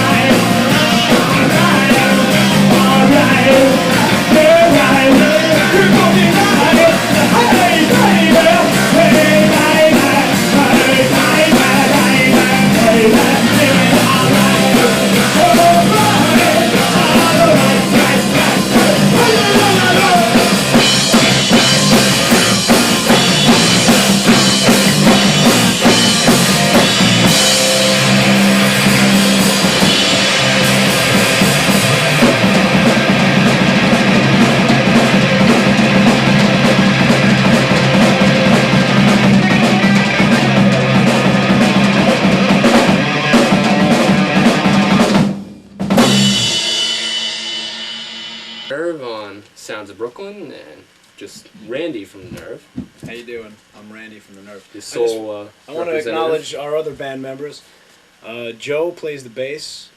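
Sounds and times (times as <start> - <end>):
person singing: 0.0 - 22.7
rock band playing: 0.0 - 49.2, 55.8 - 56.5
drum kit beat: 0.0 - 54.2, 54.8 - 57.5.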